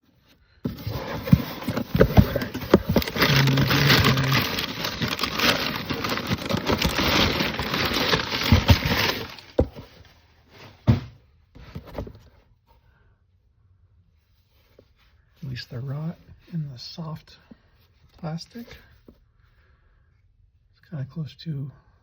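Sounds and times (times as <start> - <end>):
packaging crinkling and tearing: 0.8 - 9.7.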